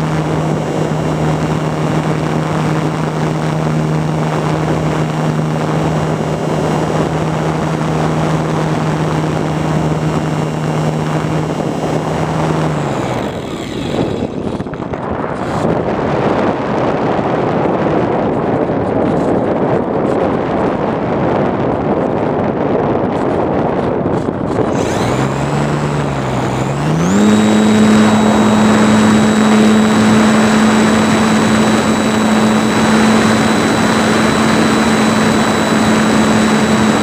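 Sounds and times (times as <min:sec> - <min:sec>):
model plane motor and propeller: 0:00.0 - 0:37.0
wind rushing over microphone: 0:00.0 - 0:37.0.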